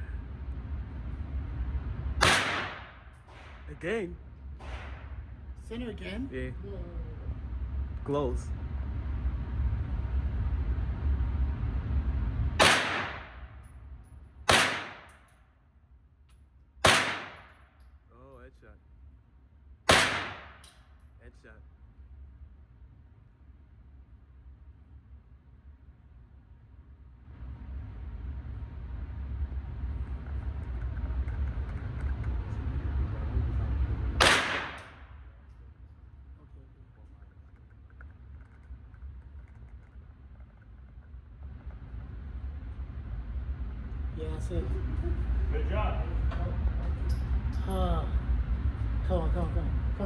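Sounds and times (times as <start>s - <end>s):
low rumble: 0.0s - 50.0s
gunshots: 2.2s - 4.0s, 4.6s - 5.3s, 12.6s - 13.6s, 14.5s - 15.2s, 16.8s - 17.7s, 19.9s - 20.7s, 34.2s - 35.4s.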